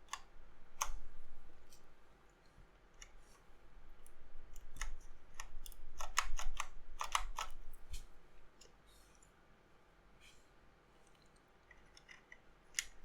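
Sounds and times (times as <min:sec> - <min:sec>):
plastic keycaps clicking: 0:04.6 - 0:07.6.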